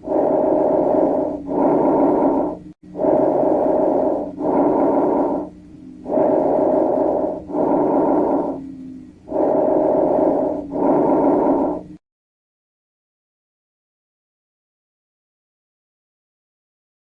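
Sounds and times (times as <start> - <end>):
breath sounds through stethoscope: 0.0 - 12.0.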